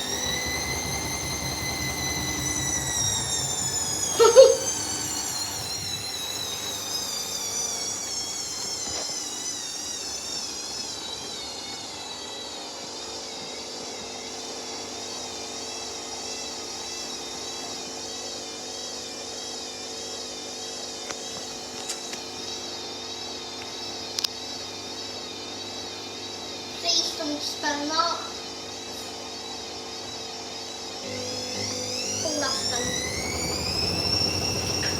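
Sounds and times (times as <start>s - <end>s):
low hum: 0.0s - 6.6s
washing machine motor whine: 0.0s - 34.9s.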